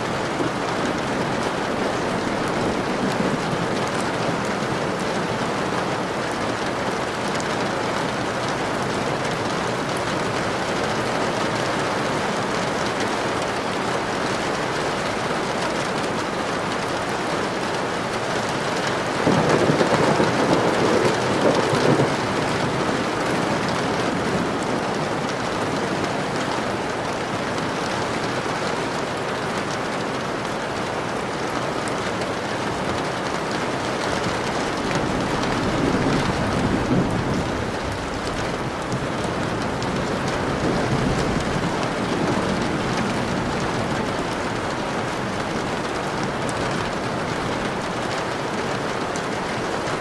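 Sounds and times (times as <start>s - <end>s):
steady rain falling: 0.0s - 50.0s
roll of thunder: 19.2s - 25.2s, 34.8s - 44.3s.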